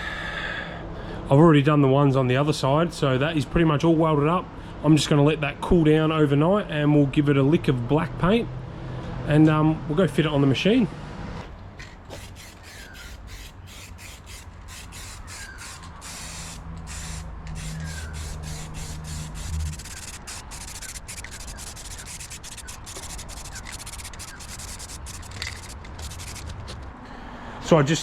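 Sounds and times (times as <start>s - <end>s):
rubbing strokes against steel: 12.1s - 26.8s.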